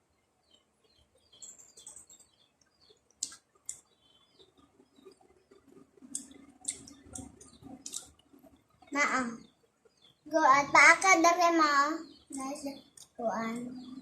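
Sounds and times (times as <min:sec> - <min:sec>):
faint bird chirps: 0:00.0 - 0:14.0
mouth chewing food: 0:05.5 - 0:08.5.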